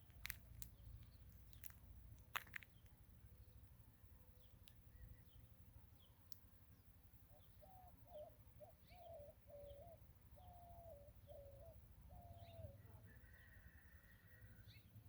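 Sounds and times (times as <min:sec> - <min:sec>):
small birds chirping: 0:00.0 - 0:15.0
dove cooing: 0:07.6 - 0:13.4.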